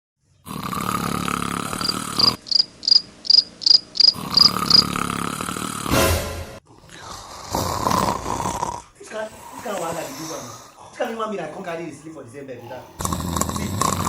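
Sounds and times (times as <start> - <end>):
cricket chirping: 1.8 - 5.0.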